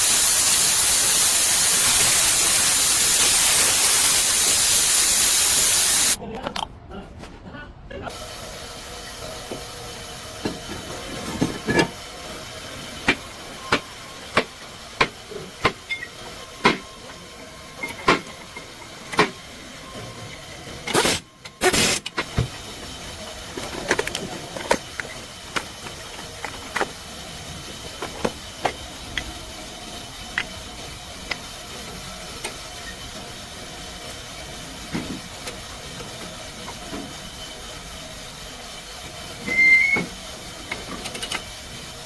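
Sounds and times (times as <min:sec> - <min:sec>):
loud bursts of hiss: 0:00.0 - 0:06.2, 0:20.9 - 0:22.7
steady mechanical hum: 0:00.0 - 0:42.0.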